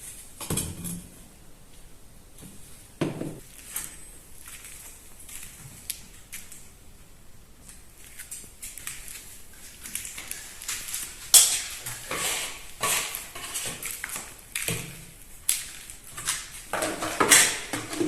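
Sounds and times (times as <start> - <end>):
masonry work knocks and scrapes: 11.3 - 15.1, 16.1 - 18.0.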